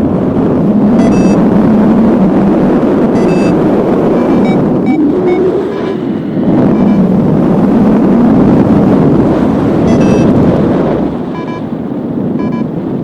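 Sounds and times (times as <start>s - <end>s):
strong wind on microphone: 0.0s - 13.0s
short electronic beeps: 1.0s - 1.4s, 3.2s - 5.9s, 9.8s - 10.3s, 11.4s - 11.7s, 12.4s - 12.7s.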